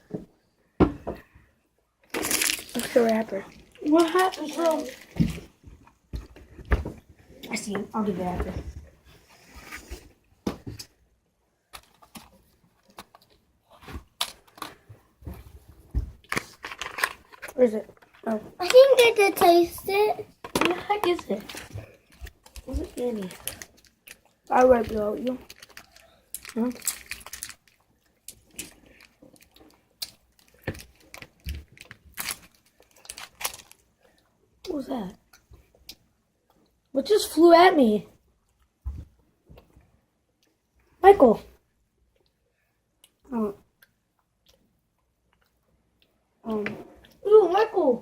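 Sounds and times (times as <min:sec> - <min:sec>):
candy wrapper clicks and rustles: 0:02.1 - 0:05.3, 0:16.2 - 0:19.2, 0:20.6 - 0:33.9.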